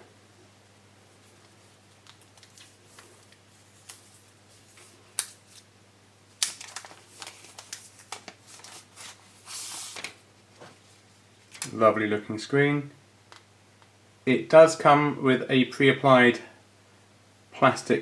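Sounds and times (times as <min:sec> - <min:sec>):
plastic wrapping rustling: 0:01.0 - 0:05.7, 0:06.4 - 0:11.7.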